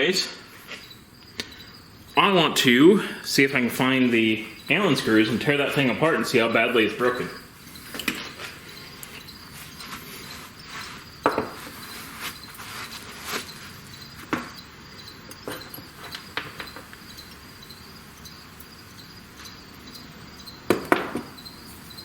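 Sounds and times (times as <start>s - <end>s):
crickets chirring: 0.0s - 22.0s
tools clicking and knocking: 15.3s - 16.9s.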